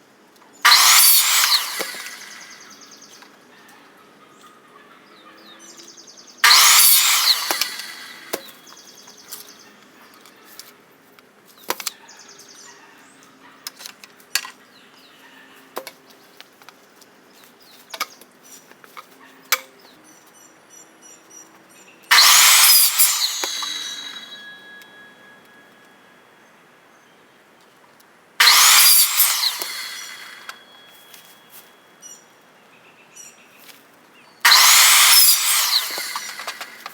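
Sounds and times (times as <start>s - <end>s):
power saw cutting plastic pipe: 0.6s - 3.0s, 6.4s - 8.7s, 22.1s - 24.7s, 28.4s - 30.8s, 34.4s - 36.9s.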